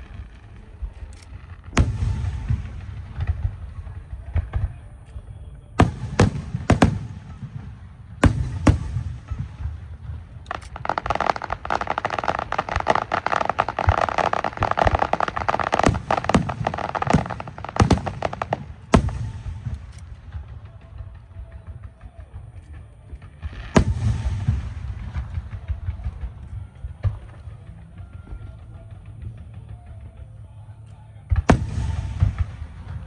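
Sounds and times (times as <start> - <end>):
firework bangs: 0.0 - 5.0, 5.8 - 30.2, 31.3 - 33.0
rapid firework crackling: 5.8 - 30.2.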